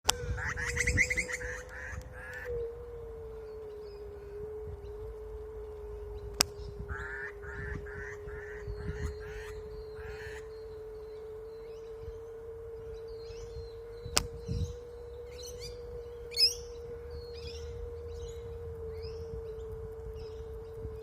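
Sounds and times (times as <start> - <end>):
electric scooter motor whine: 0.0 - 21.0
mockingbird chirping: 0.1 - 20.9.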